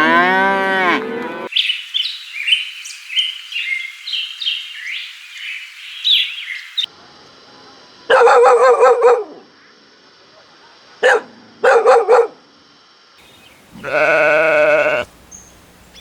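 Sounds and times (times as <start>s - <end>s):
small birds chirping: 1.5s - 6.9s, 13.2s - 16.0s
loud wavering animal call: 13.7s - 15.1s.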